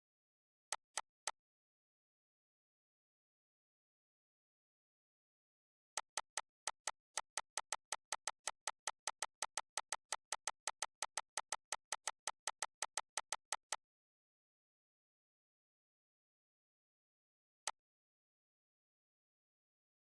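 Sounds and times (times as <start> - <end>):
rapid short clicks: 6.0 - 13.8.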